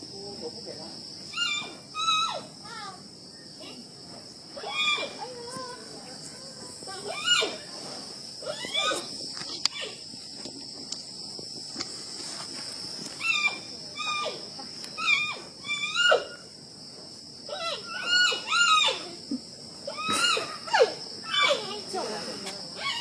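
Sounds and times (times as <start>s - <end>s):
child squealing animal call: 1.3s - 2.8s, 4.6s - 5.4s, 7.0s - 7.7s, 8.4s - 9.0s, 13.2s - 16.4s, 17.5s - 19.2s, 19.9s - 21.8s, 22.8s - 23.0s.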